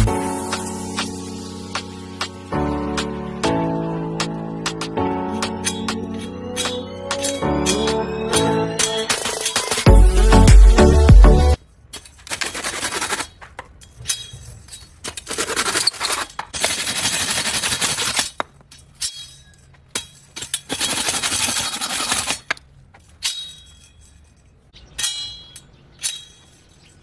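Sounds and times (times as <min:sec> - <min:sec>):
saw cutting strokes: 0:12.1 - 0:13.4, 0:15.1 - 0:18.4, 0:20.7 - 0:22.5
metallic clinks: 0:23.0 - 0:27.0.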